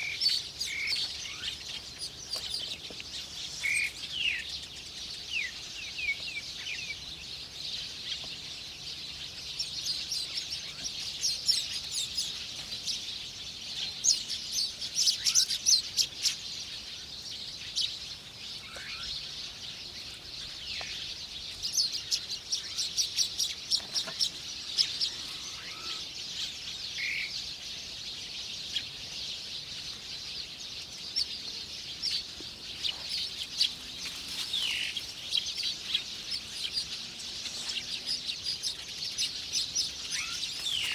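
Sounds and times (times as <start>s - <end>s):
small birds chirping: 0.0s - 40.9s
down-slurred bird calls: 21.7s - 27.3s, 30.9s - 40.9s.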